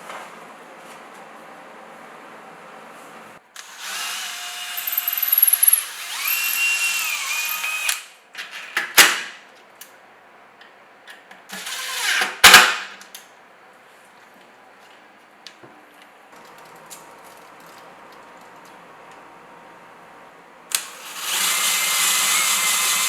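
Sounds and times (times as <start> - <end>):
power drill running: 3.6 - 8.1, 11.6 - 12.3, 20.7 - 23.0.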